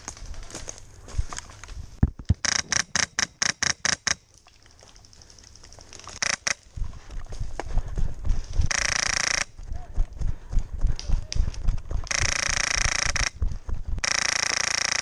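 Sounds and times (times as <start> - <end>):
airsoft gun firing full auto: 8.7 - 9.5, 12.1 - 13.3, 14.0 - 15.0.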